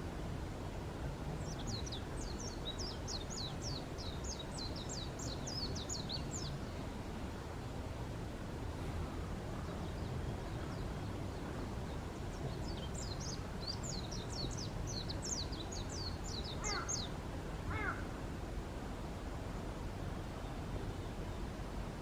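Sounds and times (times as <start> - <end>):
steady low rumble: 0.0 - 22.0
birds calling: 12.5 - 17.1, 17.7 - 18.1.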